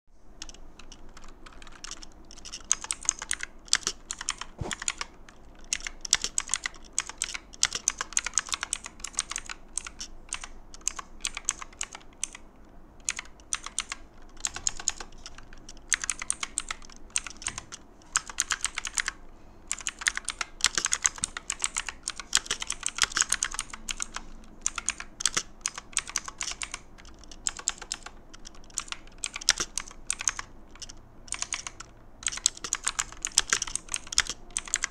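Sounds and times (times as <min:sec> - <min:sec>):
mechanical keyboard key clicks: 0:19.7 - 0:34.9.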